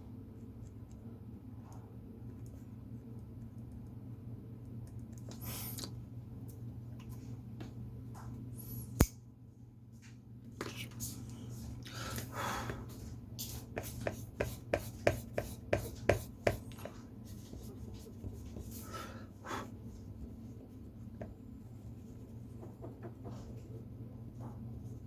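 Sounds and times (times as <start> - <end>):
steady low hum: 0.0 - 25.0
pen scratching on paper: 13.8 - 16.7.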